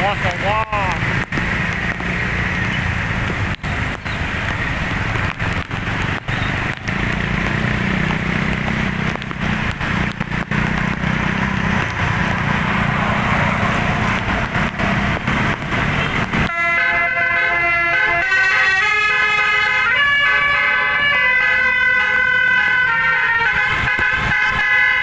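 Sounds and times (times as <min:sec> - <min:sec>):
large vehicle engine running: 0:00.0 - 0:16.5
road noise: 0:00.0 - 0:25.0.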